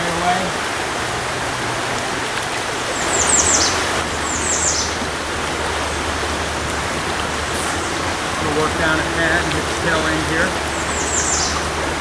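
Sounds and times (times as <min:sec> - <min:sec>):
fast-flowing river water: 0:00.0 - 0:12.0
small bird calling: 0:02.9 - 0:05.1, 0:07.4 - 0:12.0.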